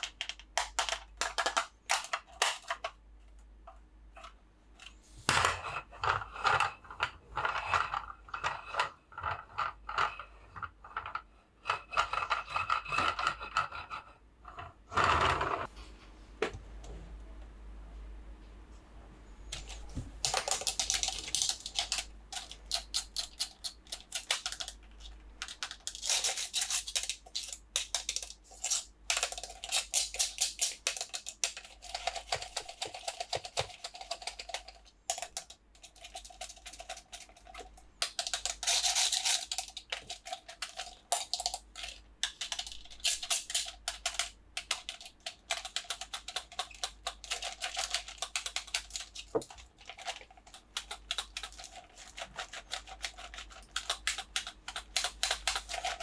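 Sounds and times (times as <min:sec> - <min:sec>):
toy packaging crackling: 0:19.5 - 0:56.0.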